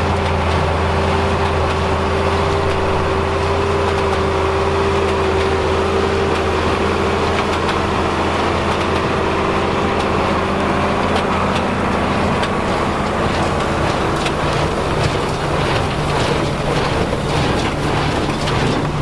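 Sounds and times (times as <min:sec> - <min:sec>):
constant whine: 0:00.0 - 0:19.0
farm machinery engine running: 0:00.0 - 0:19.0.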